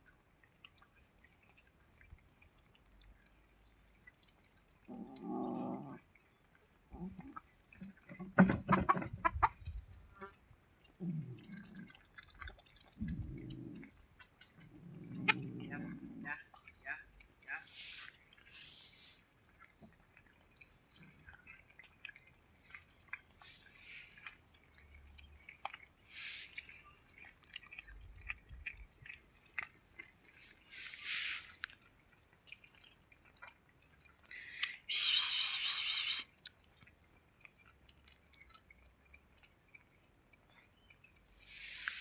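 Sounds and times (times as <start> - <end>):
cat chewing: 10.2 - 34.9, 36.0 - 42.0.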